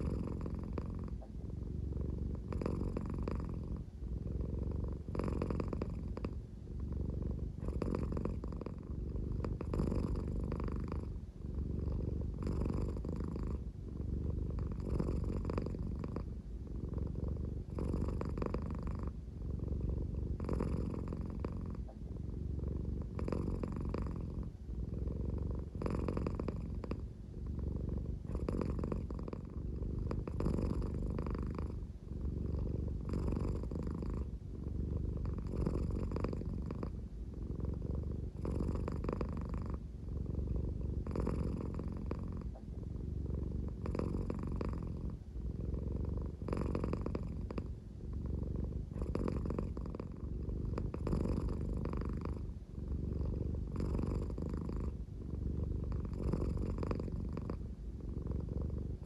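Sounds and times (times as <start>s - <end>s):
cat purring deeply: 0.0s - 59.0s.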